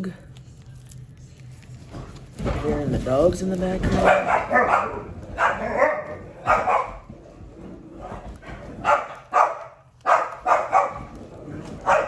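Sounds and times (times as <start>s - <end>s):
dogs barking: 3.9s - 12.0s.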